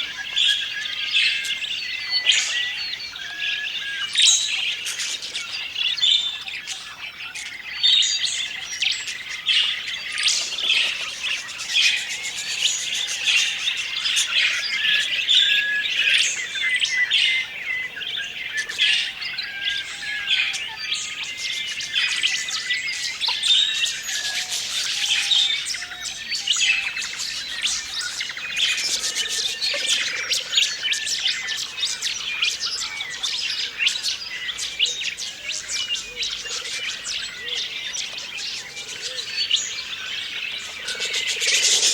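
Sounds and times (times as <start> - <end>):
budgerigars chirping and squawking: 0.0 - 41.9.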